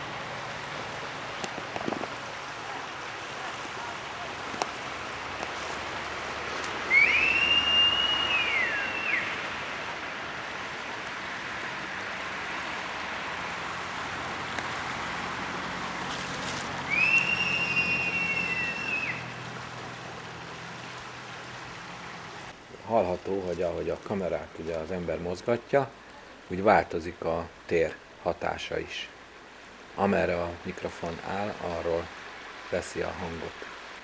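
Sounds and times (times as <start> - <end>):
steady rushing hiss: 0.0 - 34.0
bird whistled call: 6.9 - 9.4, 16.9 - 19.2.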